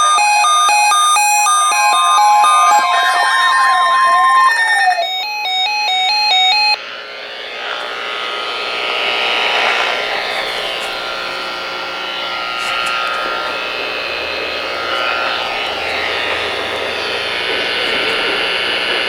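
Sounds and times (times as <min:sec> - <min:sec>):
electronic beeping alarms: 0:00.0 - 0:06.8, 0:09.4 - 0:19.0
steady alarm tone: 0:00.0 - 0:19.0
warbling siren-like sweep: 0:00.0 - 0:19.0
steady rushing noise: 0:06.8 - 0:19.0.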